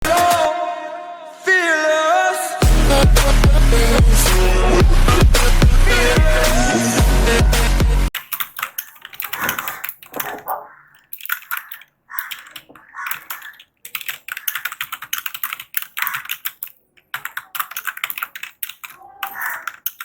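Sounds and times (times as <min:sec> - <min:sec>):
background music: 0:00.0 - 0:08.1
typing on computer keyboard: 0:08.2 - 0:10.4, 0:11.0 - 0:20.0.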